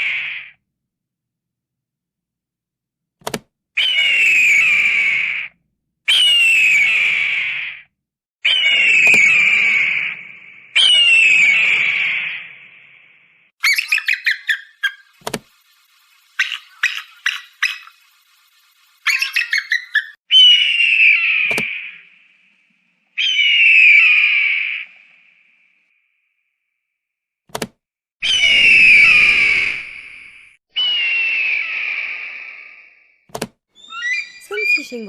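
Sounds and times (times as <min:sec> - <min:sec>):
eagle screams: 0:03.8 - 0:05.5, 0:06.1 - 0:12.7, 0:19.1 - 0:22.1, 0:23.2 - 0:24.9, 0:28.2 - 0:32.9, 0:33.8 - 0:35.0
eagle chittering: 0:13.6 - 0:20.2.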